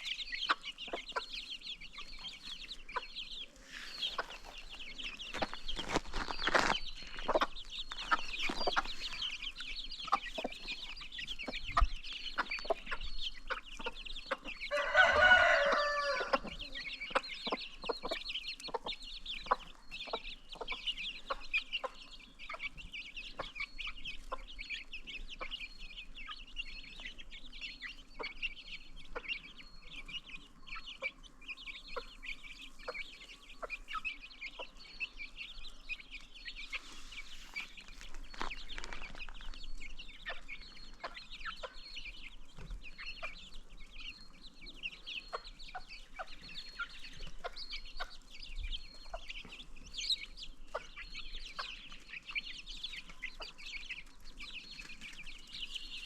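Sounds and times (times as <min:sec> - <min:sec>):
chickens clucking: 0:00.0 - 0:56.0
chicks peeping: 0:00.0 - 0:56.0
rustling noise: 0:03.6 - 0:09.4, 0:36.7 - 0:39.8.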